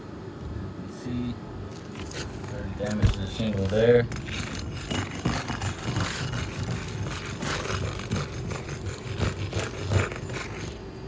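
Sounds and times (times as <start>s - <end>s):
tool scraping roof shingles: 2.0s - 10.8s.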